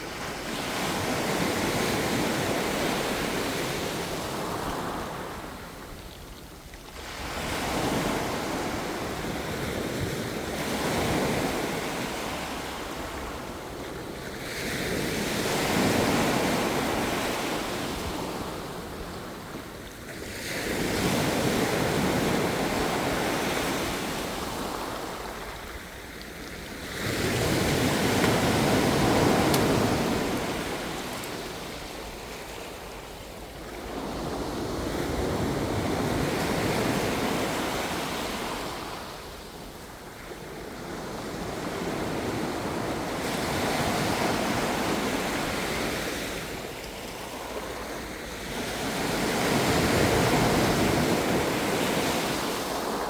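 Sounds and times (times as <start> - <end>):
waves breaking: 6.9 - 39.2.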